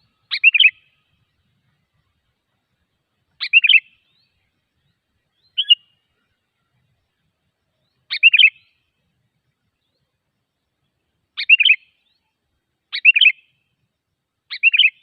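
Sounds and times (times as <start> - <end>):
bulbul calling: 0.0 - 1.1, 3.4 - 4.4, 5.3 - 6.8, 7.8 - 8.8, 11.4 - 12.2, 12.9 - 13.6, 14.5 - 15.0.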